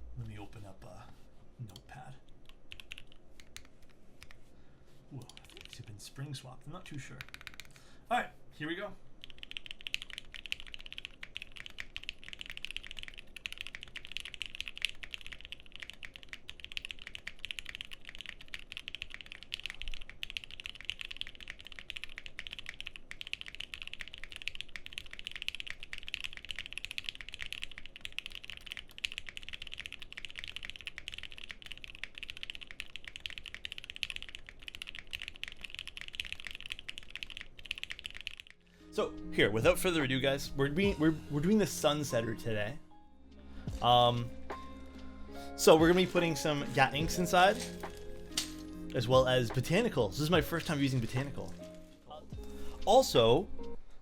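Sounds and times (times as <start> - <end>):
fast typing on mechanical keyboard: 2.4 - 4.4, 5.3 - 5.9, 7.1 - 7.8, 9.2 - 38.6.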